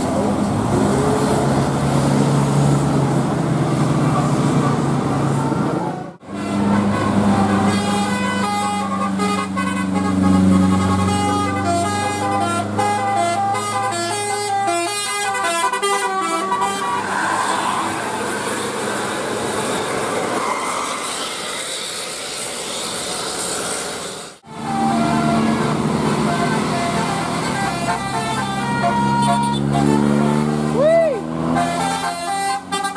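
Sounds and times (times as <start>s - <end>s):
multi-tone musical air horn: 6.2s - 17.1s, 24.5s - 30.8s, 31.4s - 32.9s.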